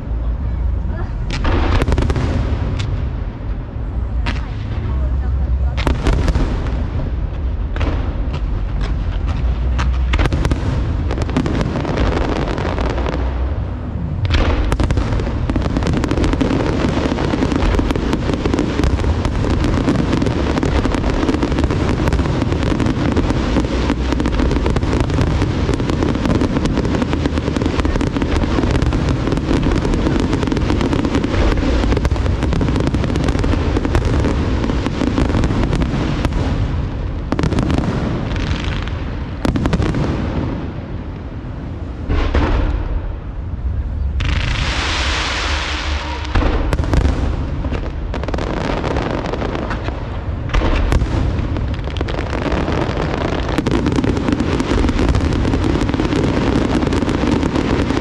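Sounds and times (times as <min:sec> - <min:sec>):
fireworks bursts and crackling: 0:00.0 - 0:58.0.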